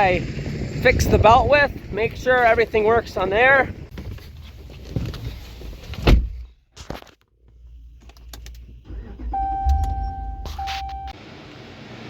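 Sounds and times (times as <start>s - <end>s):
low engine rumble: 7.5s - 11.2s
electronic warning tone: 9.2s - 11.2s.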